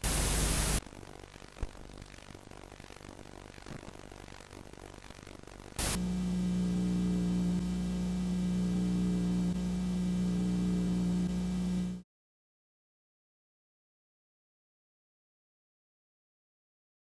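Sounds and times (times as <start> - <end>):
loud buzzing hum: 0.0 - 12.0
static hiss: 0.0 - 12.0.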